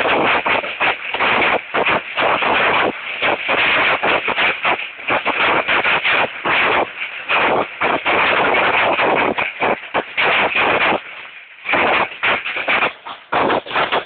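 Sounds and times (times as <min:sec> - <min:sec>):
hail and rain pelting: 0:00.0 - 0:14.0.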